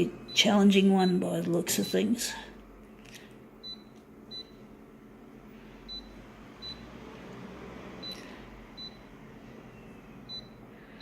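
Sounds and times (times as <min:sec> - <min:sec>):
photocopier control panel beeps: 0:00.0 - 0:02.1, 0:03.6 - 0:04.6, 0:05.9 - 0:06.8, 0:08.0 - 0:09.1, 0:09.7 - 0:11.0
photocopier low hum: 0:00.0 - 0:11.0.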